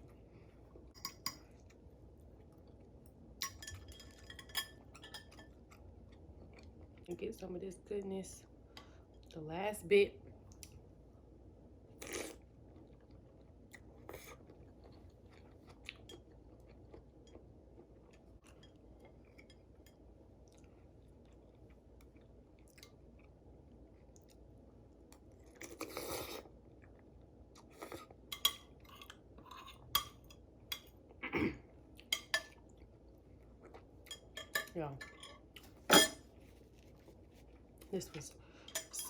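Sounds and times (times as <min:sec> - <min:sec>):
person chewing noodles: 0:12.0 - 0:19.5, 0:25.2 - 0:28.3.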